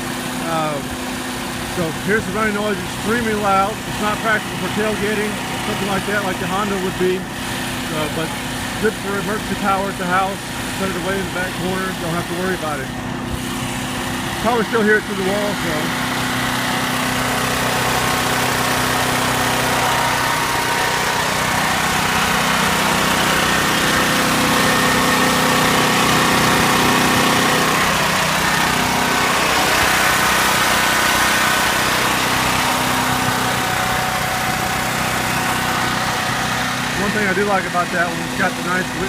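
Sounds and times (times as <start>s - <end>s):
generator engine running: 0.0s - 39.0s.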